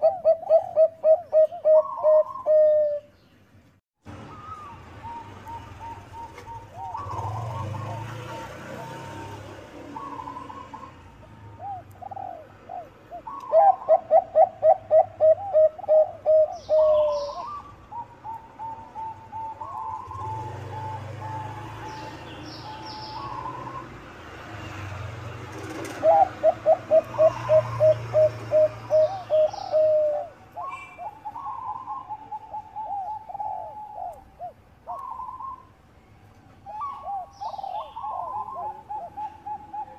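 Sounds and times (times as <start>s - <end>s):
doves cooing: 0.0s - 3.1s, 4.3s - 24.0s, 25.4s - 35.7s, 36.6s - 39.9s.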